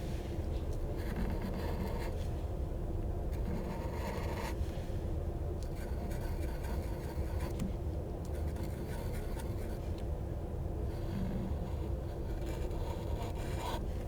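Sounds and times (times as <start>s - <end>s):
low background hum: 0.0s - 14.0s
pen scribbling on paper: 11.2s - 13.8s.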